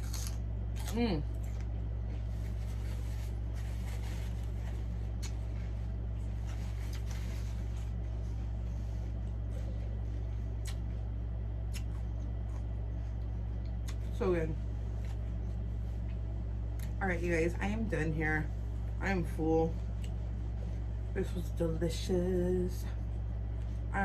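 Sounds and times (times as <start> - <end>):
person chewing: 0.0 - 1.8, 5.1 - 5.6, 10.4 - 10.9, 11.6 - 14.0
steady low hum: 0.0 - 24.0.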